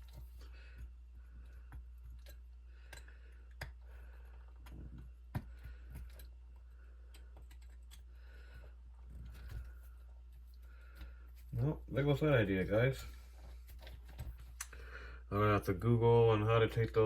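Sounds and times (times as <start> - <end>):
small clicks and taps: 4.6 - 8.1.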